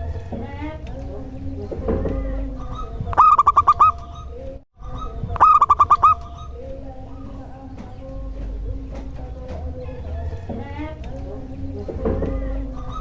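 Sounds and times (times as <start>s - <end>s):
dove cooing: 2.2s - 10.9s.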